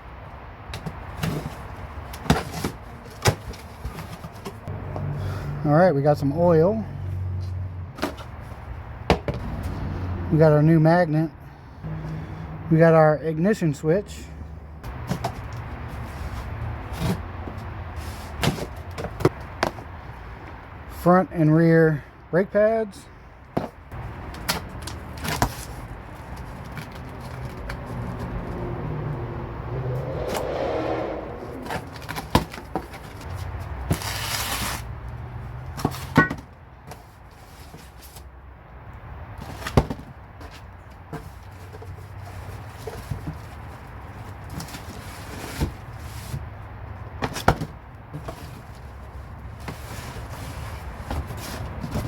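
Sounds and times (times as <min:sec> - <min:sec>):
vehicle engine humming: 0:00.0 - 0:20.9, 0:23.3 - 0:34.1
cardboard boxes being handled: 0:00.7 - 0:04.7, 0:14.9 - 0:19.9, 0:23.6 - 0:28.4, 0:31.6 - 0:34.8, 0:39.4 - 0:52.0
knocks of boxes being handled: 0:09.1 - 0:09.5.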